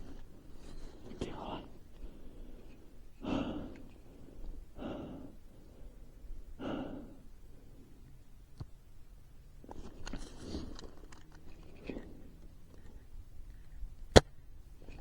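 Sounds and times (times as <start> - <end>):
person breathing heavily: 0.1 - 8.0.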